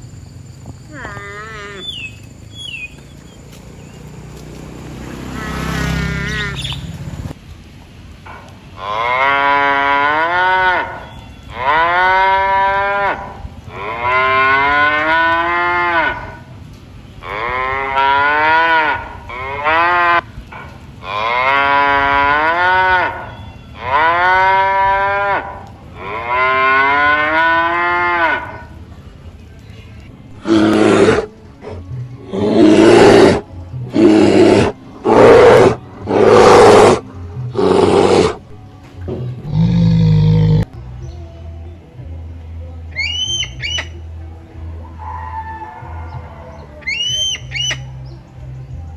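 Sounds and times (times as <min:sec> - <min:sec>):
cattle mooing: 0:00.8 - 0:03.0, 0:05.2 - 0:06.8, 0:08.8 - 0:16.5, 0:17.2 - 0:20.3, 0:21.0 - 0:28.8, 0:30.3 - 0:38.6, 0:39.2 - 0:40.8.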